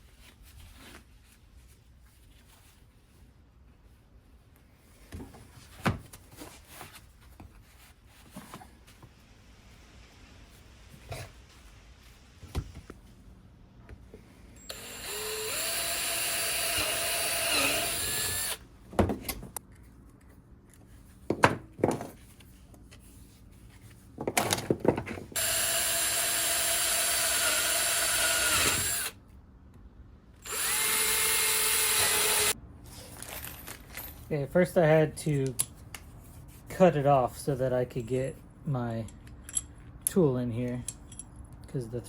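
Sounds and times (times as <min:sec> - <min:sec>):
electric power tool running: 0:14.6 - 0:18.6, 0:25.4 - 0:29.2, 0:30.4 - 0:32.6.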